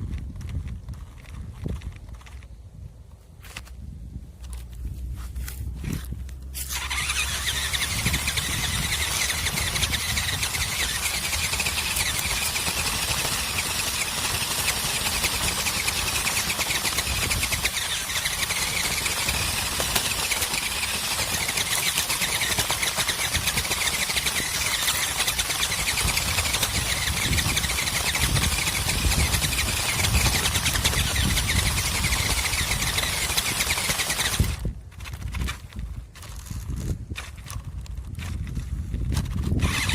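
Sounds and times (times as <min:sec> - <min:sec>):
wheels rattling on rough ground: 0:00.0 - 0:39.9
electric motor whining: 0:05.8 - 0:39.9.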